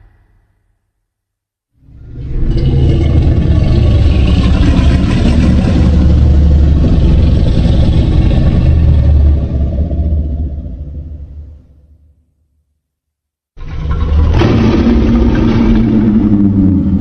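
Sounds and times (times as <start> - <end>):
monster roar deep rough rumble: 1.8 - 11.6, 13.6 - 17.0.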